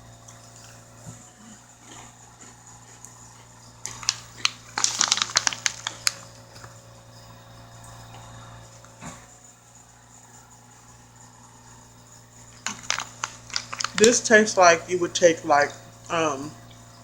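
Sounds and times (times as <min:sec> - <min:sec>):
crunching crisp snack: 0:00.6 - 0:06.8, 0:12.6 - 0:14.6.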